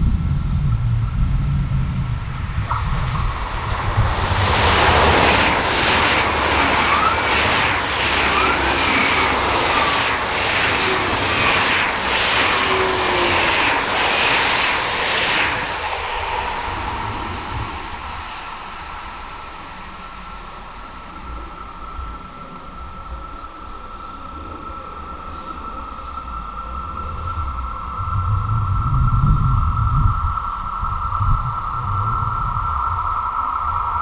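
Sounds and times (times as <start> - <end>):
train wheels rushing on rails: 0.5 - 34.0
thin wheel squeals: 3.9 - 16.2.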